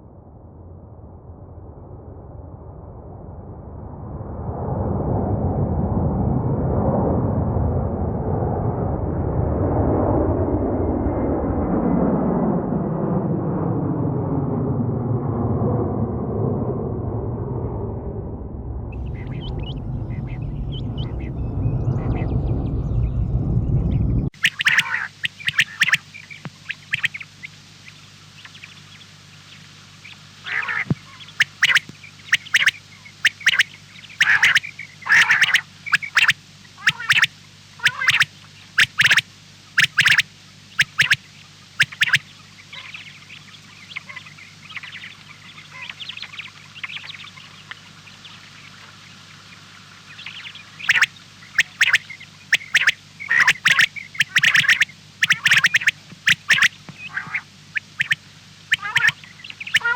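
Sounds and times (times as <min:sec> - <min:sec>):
steady low hum: 0:00.0 - 0:59.9
harsh duck-like quacks: 0:34.2 - 0:38.2, 0:52.6 - 0:59.9.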